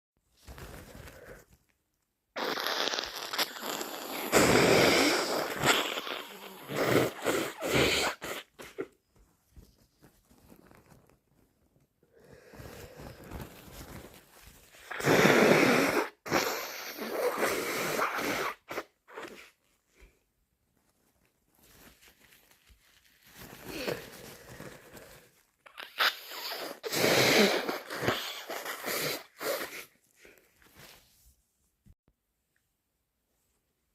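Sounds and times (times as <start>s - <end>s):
person sneezing: 2.4s - 8.9s.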